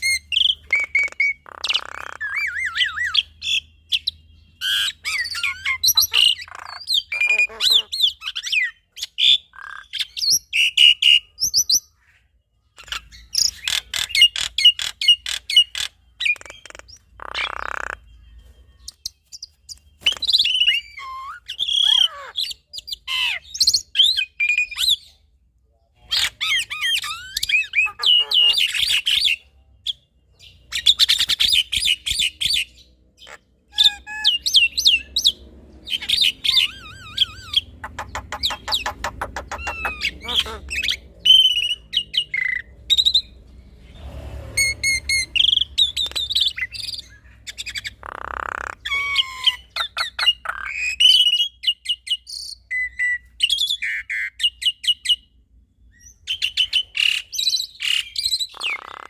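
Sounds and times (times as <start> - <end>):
mynas whistling and chirping: 33.7 - 43.4
harsh rasping bird call: 35.9 - 42.6.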